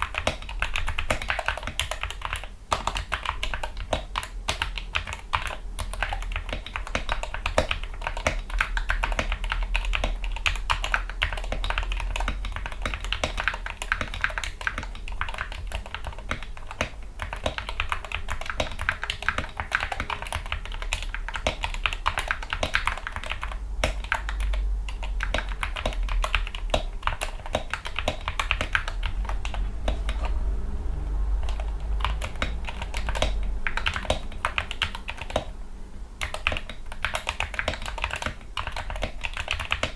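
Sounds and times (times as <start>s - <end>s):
fast keyboard typing: 0.0s - 35.6s, 36.2s - 39.9s.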